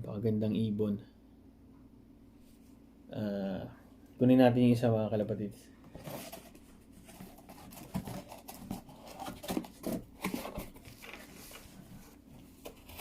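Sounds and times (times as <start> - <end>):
rustling scratching and tapping: 5.9 - 13.0.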